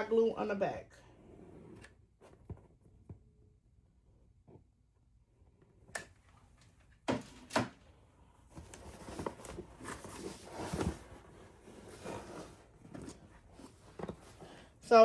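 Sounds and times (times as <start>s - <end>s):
foam board box rustling and scraping: 8.6s - 14.7s.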